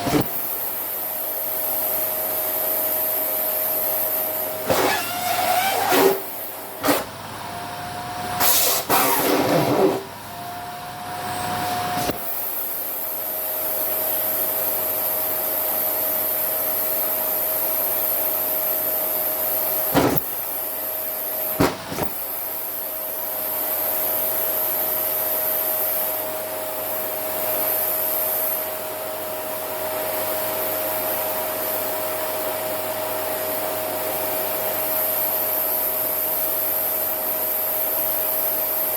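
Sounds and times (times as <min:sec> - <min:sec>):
vacuum cleaner whining: 0:00.0 - 0:01.0, 0:04.0 - 0:12.6
vacuum surges and knocks: 0:20.0 - 0:20.3.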